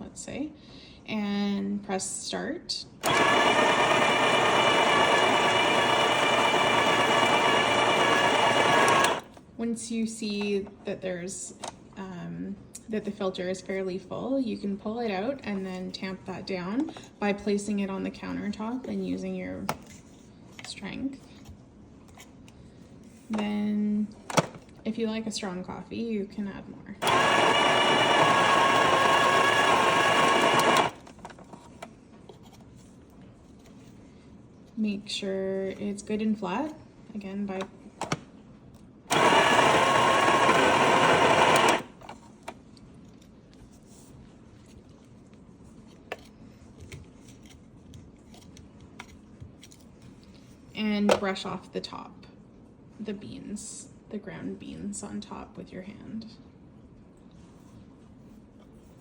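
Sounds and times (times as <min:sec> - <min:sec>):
coffee grinder grinding: 0:03.0 - 0:09.3, 0:27.0 - 0:31.0, 0:39.1 - 0:42.0.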